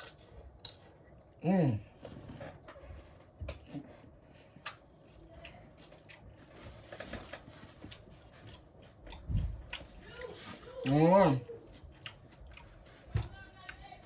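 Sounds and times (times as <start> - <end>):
chewing crunchy chips: 4.5 - 13.0.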